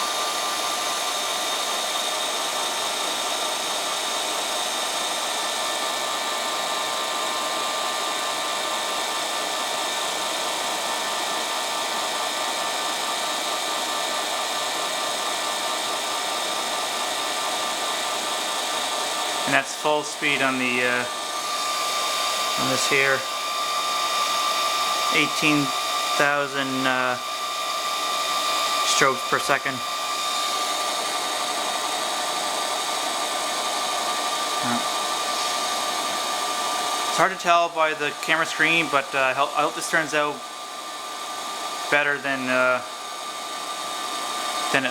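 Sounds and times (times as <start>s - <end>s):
ceiling fan whirring: 14.8s - 44.9s.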